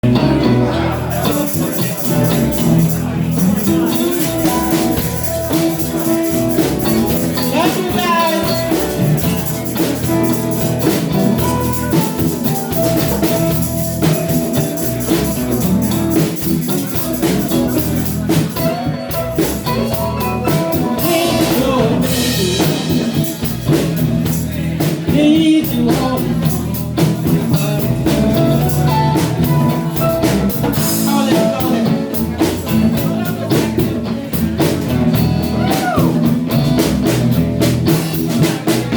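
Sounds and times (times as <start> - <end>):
person singing: 0.0 - 13.1, 16.8 - 34.4
band playing a song: 0.0 - 38.9
drum kit: 0.0 - 38.9.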